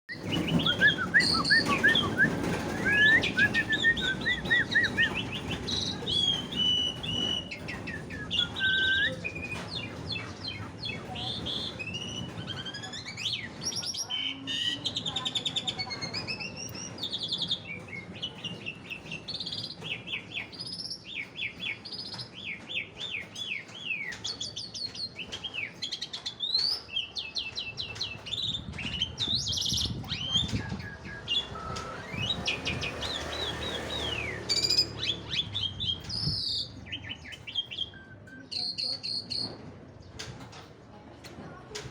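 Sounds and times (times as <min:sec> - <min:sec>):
starling singing: 0:00.1 - 0:39.5.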